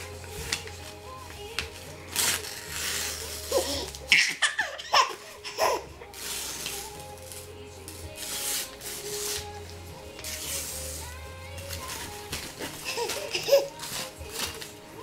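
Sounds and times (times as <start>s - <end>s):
paper rustling and tearing: 0.0s - 15.0s.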